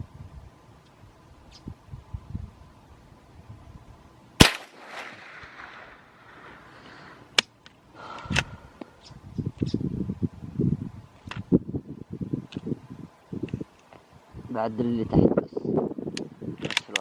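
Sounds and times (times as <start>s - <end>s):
rifle shot echoing: 4.4s - 6.6s.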